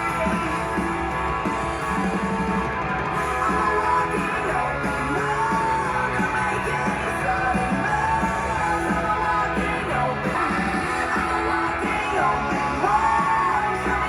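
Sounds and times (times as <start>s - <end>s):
guitar: 0.0s - 14.0s
rock music: 0.0s - 14.0s
person singing: 3.1s - 14.0s.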